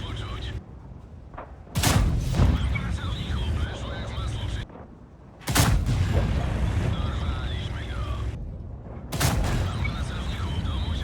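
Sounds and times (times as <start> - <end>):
gunshots with rumbling echo: 1.2 - 4.0, 4.6 - 7.7, 8.6 - 11.0.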